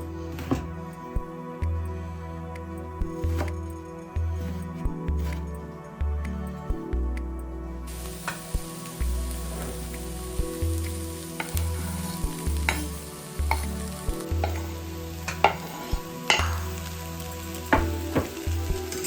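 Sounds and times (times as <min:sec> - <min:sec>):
food sizzling in a pan: 0:07.9 - 0:19.0.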